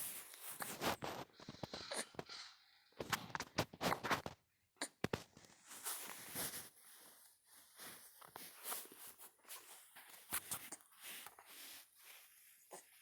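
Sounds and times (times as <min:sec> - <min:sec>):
soft breathing: 0:05.8 - 0:13.0.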